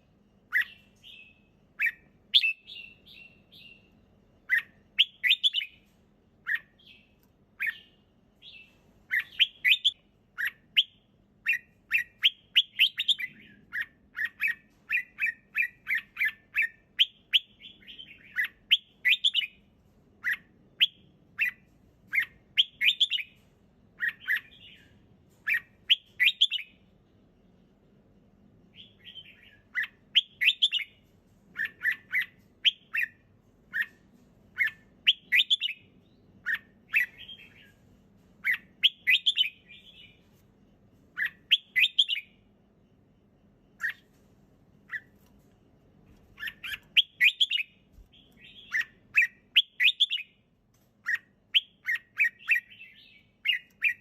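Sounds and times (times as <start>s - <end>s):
bird singing chirpy phrases: 46.4s - 50.3s.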